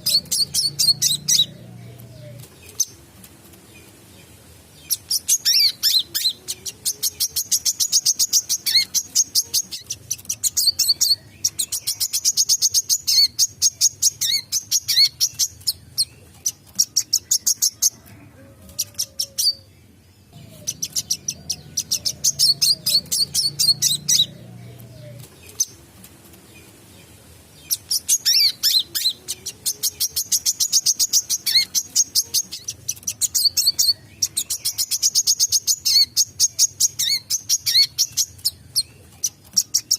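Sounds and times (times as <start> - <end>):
bird high sharp chirps: 0.0 - 1.5, 4.9 - 17.9, 20.3 - 24.4, 27.7 - 39.9.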